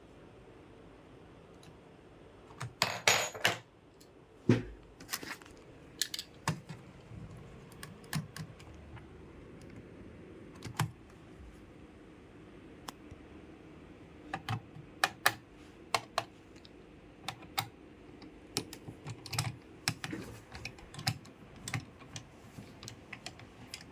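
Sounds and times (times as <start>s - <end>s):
plastic clicks and clacks: 18.5s - 23.9s.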